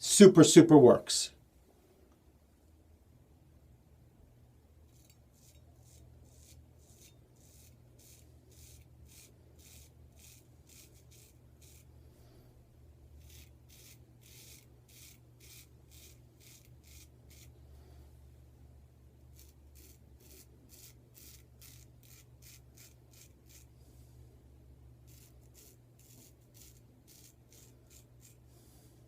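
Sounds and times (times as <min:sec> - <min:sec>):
straight razor shaving stubble: 0:05.0 - 0:11.9, 0:13.2 - 0:17.5, 0:19.3 - 0:23.7, 0:25.1 - 0:28.4.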